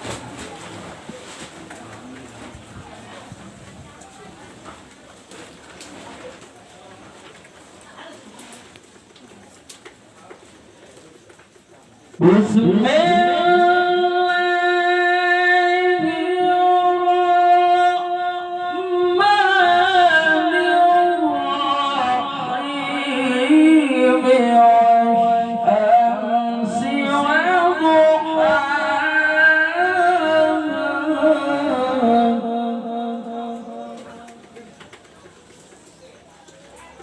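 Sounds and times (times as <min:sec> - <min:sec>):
man reciting melodically: 0:12.1 - 0:34.8.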